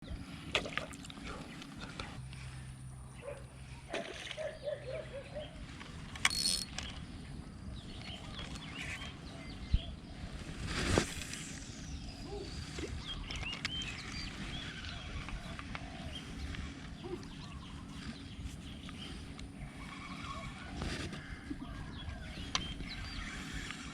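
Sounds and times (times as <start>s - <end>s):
chirping calls: 3.1s - 5.8s, 11.5s - 23.9s
steady low rumble: 6.8s - 23.9s.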